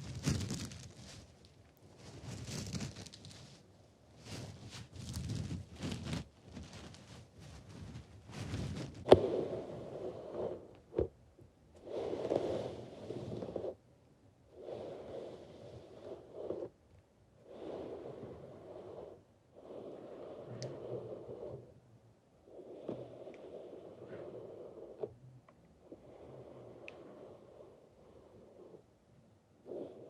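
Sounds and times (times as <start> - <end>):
close-up breathing into microphone: 11.8 - 13.8, 22.4 - 25.2.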